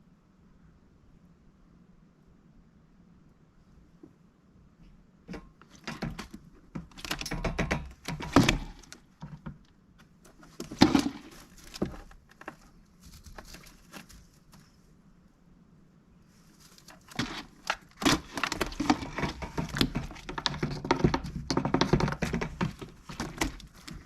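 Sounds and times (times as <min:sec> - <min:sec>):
duck knocking and rustling: 0:05.3 - 0:14.8, 0:16.3 - 0:24.0.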